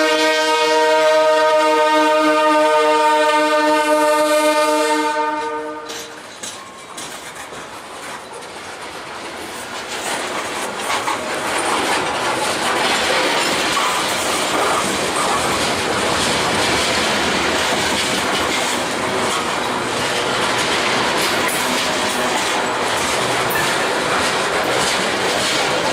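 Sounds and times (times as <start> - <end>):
locomotive air horn: 0.0 - 6.2
train wheels clicking on rails: 5.4 - 25.9.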